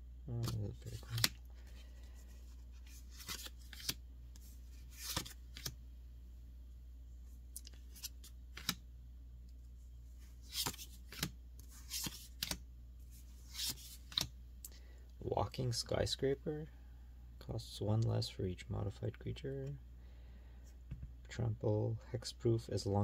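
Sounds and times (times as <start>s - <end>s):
faint low hum: 0.0s - 23.0s
cards sliding and flipping: 0.4s - 5.8s, 7.6s - 8.8s, 10.2s - 14.3s.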